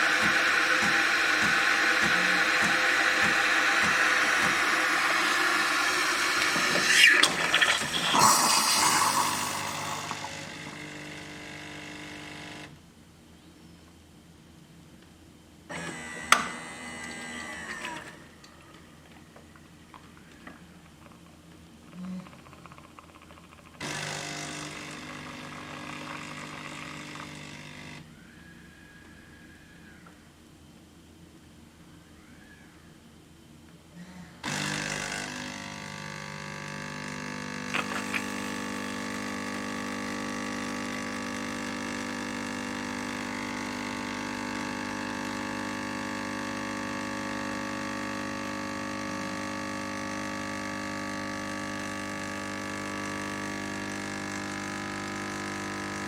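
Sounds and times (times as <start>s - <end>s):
steam hissing and milk gurgling: 0.0s - 10.7s
coffee machine pump whirring: 0.0s - 12.4s, 22.2s - 28.1s, 34.4s - 56.0s.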